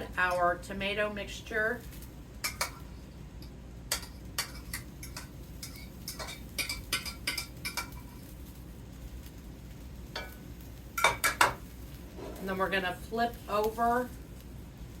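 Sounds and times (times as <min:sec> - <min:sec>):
spoon clinking against dishes: 0:03.9 - 0:08.0.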